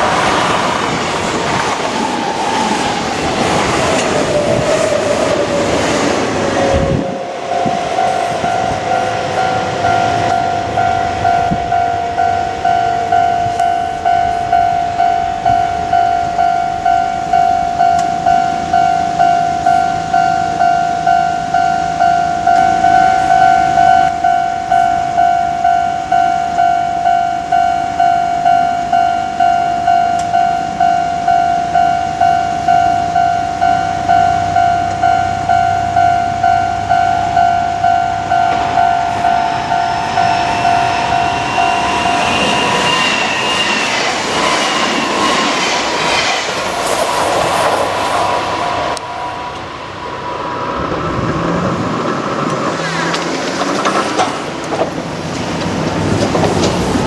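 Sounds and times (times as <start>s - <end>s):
train running past: 0.0s - 57.0s
level crossing warning bell: 6.4s - 46.9s
train wheels squealing: 36.4s - 50.3s.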